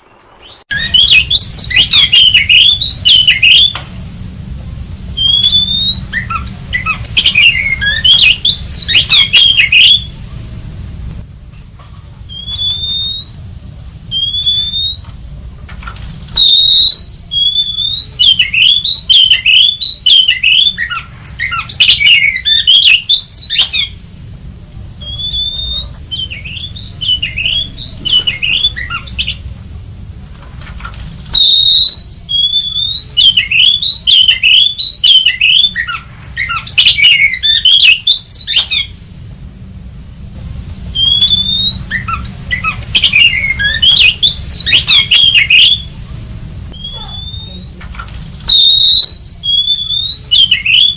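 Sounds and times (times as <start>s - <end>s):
bird singing whistles: 0.0s - 3.8s, 5.2s - 10.2s, 12.3s - 13.4s, 14.1s - 15.1s, 16.4s - 24.0s, 25.0s - 29.4s, 31.3s - 39.0s, 40.9s - 46.0s, 46.7s - 47.8s, 48.5s - 50.9s.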